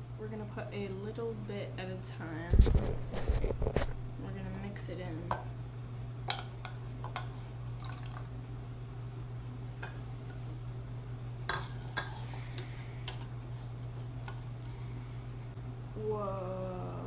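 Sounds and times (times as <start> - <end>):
steady low hum: 0.0 - 17.0
spoon stirring wet mixture: 6.3 - 8.3, 11.5 - 14.8.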